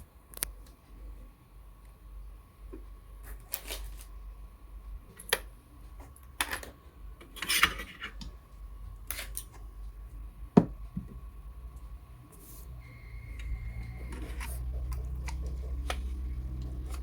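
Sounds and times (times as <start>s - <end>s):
faint steady high tone: 12.8s - 14.5s.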